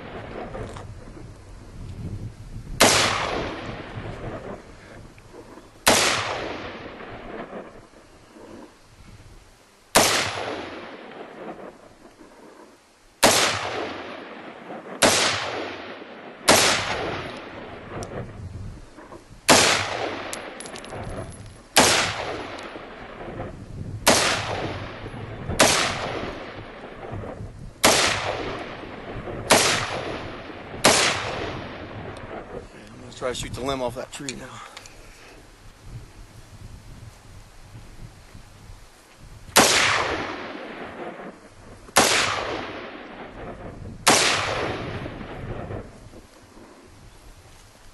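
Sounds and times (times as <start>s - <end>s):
gunshots with echo: 2.8s - 4.6s, 13.2s - 18.1s, 19.5s - 23.5s, 24.1s - 27.1s, 27.8s - 32.5s, 39.6s - 41.3s, 42.0s - 45.8s.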